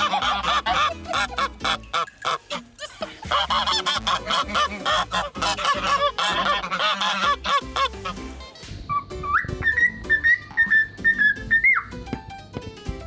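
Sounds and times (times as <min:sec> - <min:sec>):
parrot honking calls: 0:00.0 - 0:02.7, 0:03.3 - 0:08.3, 0:08.9 - 0:11.9.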